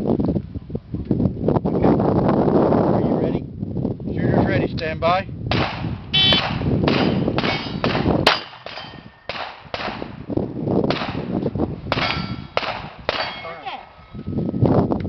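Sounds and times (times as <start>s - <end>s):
rapid gunshots: 5.5s - 10.2s, 10.9s - 13.4s
steel targets clanging: 6.9s - 9.3s, 11.9s - 13.8s.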